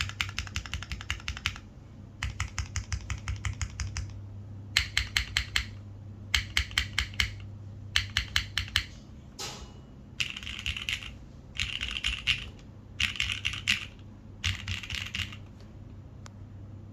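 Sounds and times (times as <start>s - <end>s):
mechanical keyboard typing: 0.0s - 1.6s, 2.2s - 4.2s, 4.8s - 8.9s, 10.2s - 15.6s.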